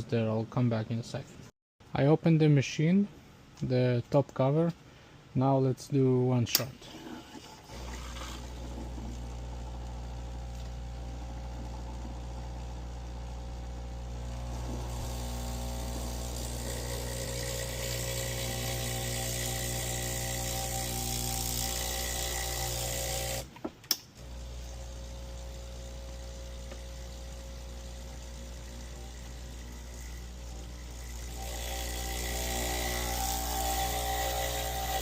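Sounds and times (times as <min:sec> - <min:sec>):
espresso machine pump buzzing: 0:07.6 - 0:23.5, 0:24.2 - 0:35.0.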